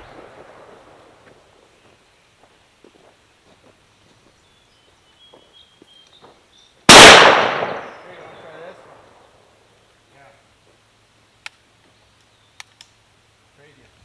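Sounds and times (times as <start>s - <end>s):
rifle shot echoing: 6.9s - 9.0s
faint clicks: 11.4s - 11.6s, 12.2s - 13.0s.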